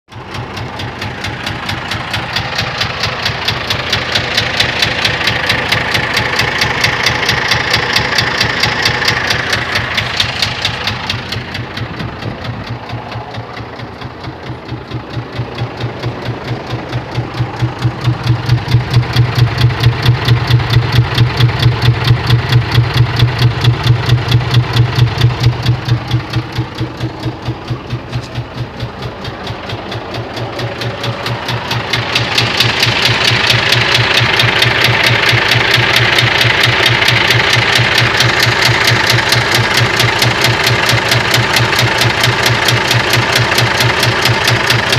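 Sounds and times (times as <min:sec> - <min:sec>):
engine knocking: 0:00.1 - 0:44.9
truck diesel engine running: 0:00.1 - 0:44.9.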